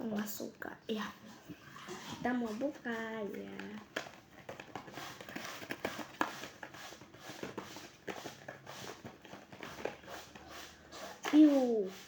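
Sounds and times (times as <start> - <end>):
packaging rustling and crinkling: 2.6 - 11.2
clicks and taps: 3.2 - 6.8.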